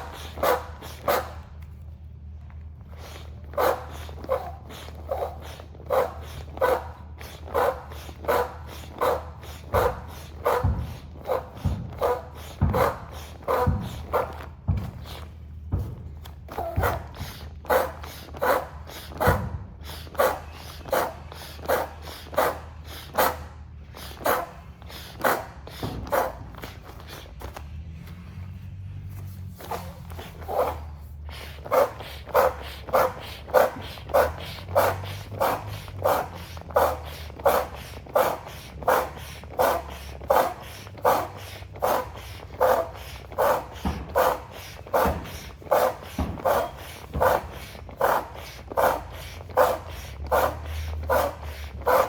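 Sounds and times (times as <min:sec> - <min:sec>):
foot pump puffing air: 0:00.0 - 0:52.0.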